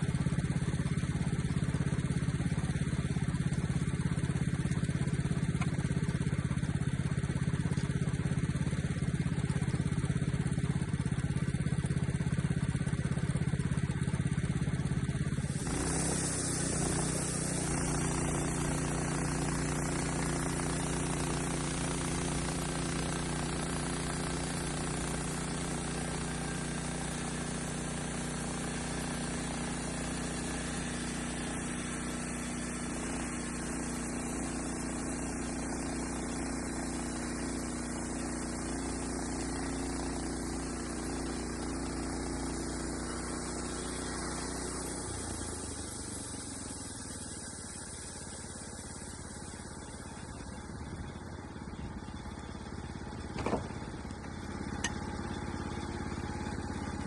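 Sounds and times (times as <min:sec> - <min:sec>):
small engine running: 0:00.0 - 0:57.0
sharp knock: 0:53.4 - 0:53.8.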